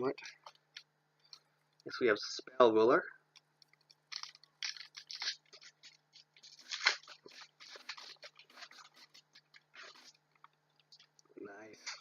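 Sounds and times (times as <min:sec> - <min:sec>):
foil pack crinkling and tearing: 0:03.8 - 0:10.3.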